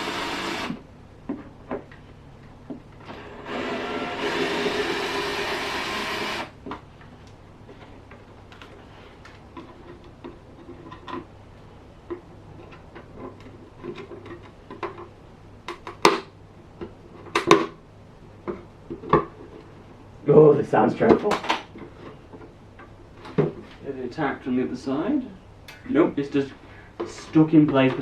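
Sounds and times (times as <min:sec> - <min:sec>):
power tool electric motor: 0:00.0 - 0:00.8, 0:03.1 - 0:06.5.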